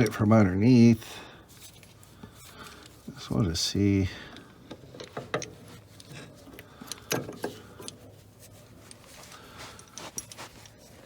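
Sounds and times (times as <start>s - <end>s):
metal car parts clinking: 4.3s - 11.0s.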